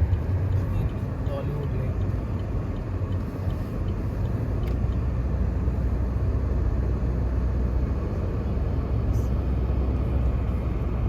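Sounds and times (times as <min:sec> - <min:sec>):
car driving rumble inside cabin: 0:00.0 - 0:11.0.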